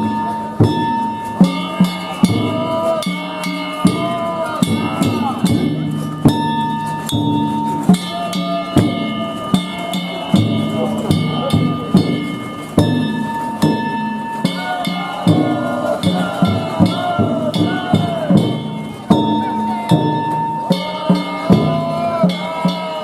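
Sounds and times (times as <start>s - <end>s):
drum struck in steady beat: 0.0s - 23.0s
ringing metal gongs: 0.0s - 23.0s.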